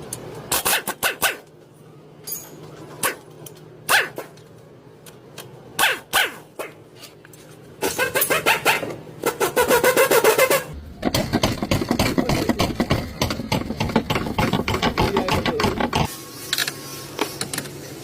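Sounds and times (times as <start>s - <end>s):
dog barking: 3.9s - 4.3s, 5.8s - 6.4s.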